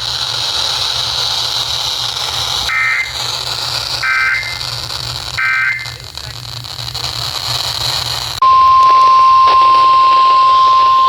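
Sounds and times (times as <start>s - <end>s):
radio static: 2.7s - 7.5s.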